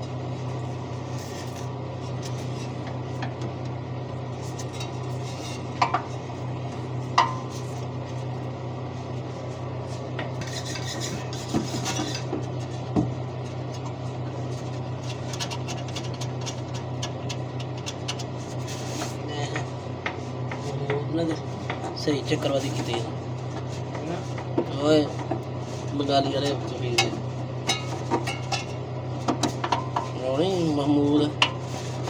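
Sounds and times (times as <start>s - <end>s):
steady low hum: 0.0s - 32.0s
metal tools clinking and scraping: 10.4s - 12.8s, 25.1s - 30.7s.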